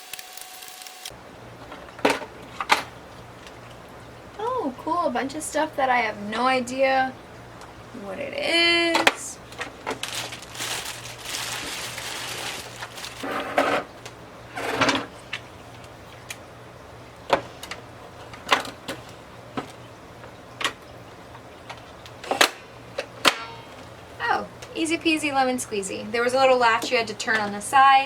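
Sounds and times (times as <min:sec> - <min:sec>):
plastic parts clicking and knocking: 0:01.7 - 0:02.9
packing rustling: 0:09.5 - 0:14.0.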